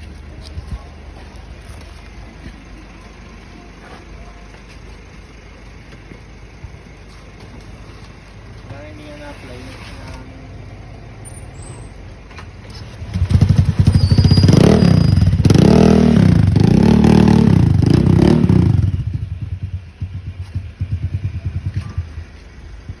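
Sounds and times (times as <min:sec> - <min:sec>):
motorcycle engine revving: 0:12.7 - 0:23.0.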